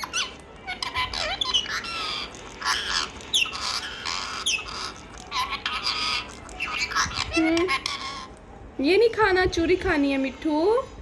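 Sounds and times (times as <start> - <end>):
parrot squawking: 0.0 - 8.5.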